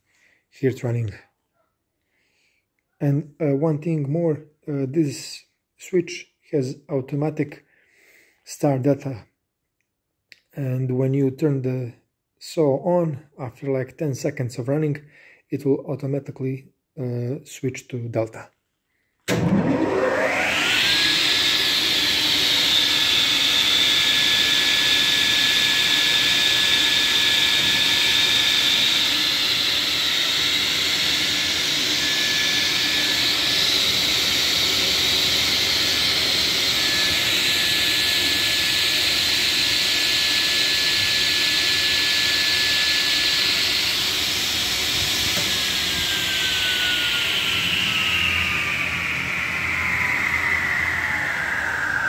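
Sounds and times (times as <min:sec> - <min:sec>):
table saw motor whine: 0:19.3 - 0:52.0.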